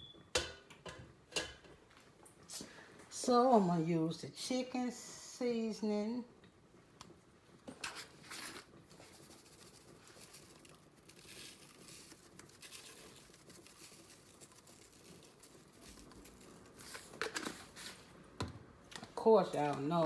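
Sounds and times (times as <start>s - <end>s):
faint rustling and crinkling: 6.8s - 18.2s.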